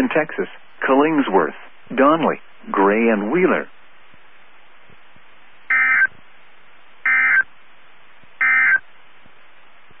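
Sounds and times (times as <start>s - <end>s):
radio hiss: 0.0s - 6.2s
buzzy digital data bursts: 5.7s - 6.1s, 7.0s - 7.4s, 8.4s - 8.8s.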